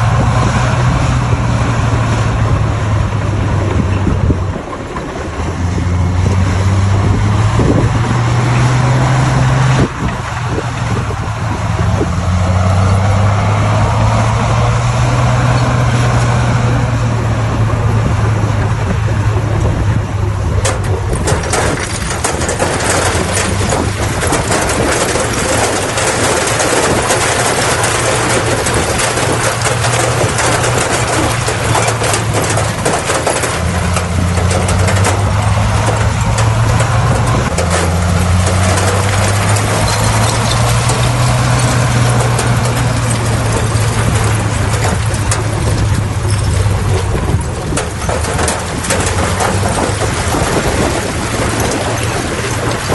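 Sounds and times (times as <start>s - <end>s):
diesel engine running under load: 0.0s - 52.9s
clattering and scraping of stone: 18.5s - 52.9s.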